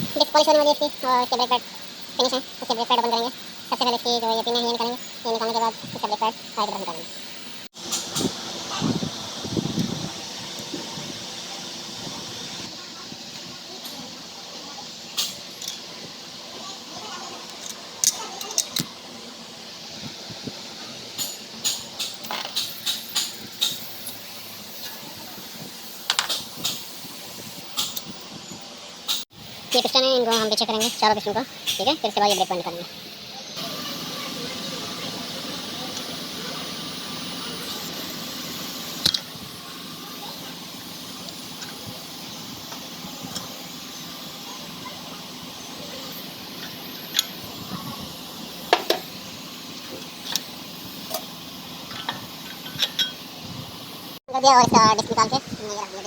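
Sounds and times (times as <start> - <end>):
brake pads and tools clinking: 51.9 - 53.3.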